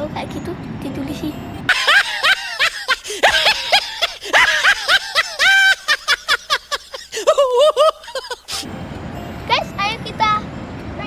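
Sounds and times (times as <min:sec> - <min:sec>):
squeaky laugh sound effect: 0:01.7 - 0:08.7.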